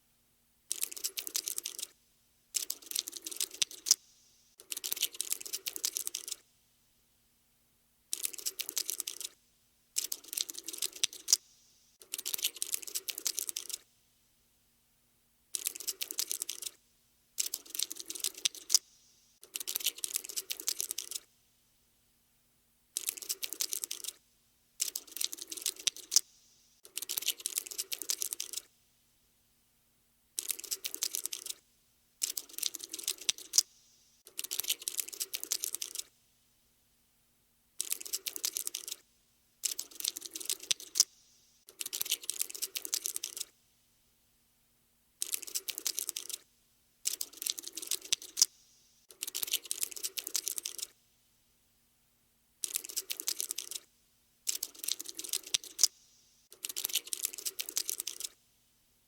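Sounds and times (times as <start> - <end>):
rapid dry clicking: 0.7 - 2.0, 2.6 - 6.4, 8.1 - 9.4, 10.0 - 13.8, 15.6 - 16.8, 17.4 - 21.3, 23.0 - 24.2, 24.8 - 28.7, 30.4 - 31.6, 32.2 - 36.1, 37.8 - 39.0, 39.6 - 43.5, 45.2 - 46.4, 47.1 - 51.0, 52.6 - 53.9, 54.5 - 58.4.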